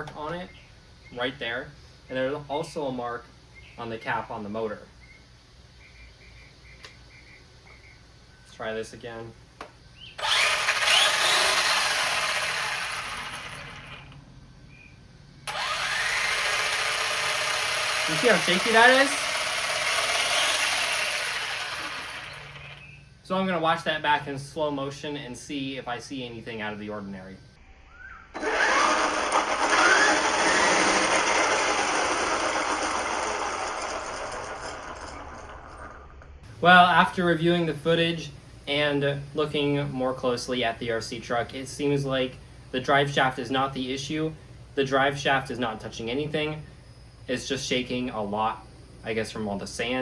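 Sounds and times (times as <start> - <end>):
gears hissing: 10.2 - 14.1, 15.5 - 23.0, 28.4 - 35.8
electric motor whine: 10.2 - 14.2, 15.5 - 22.9, 28.4 - 35.8.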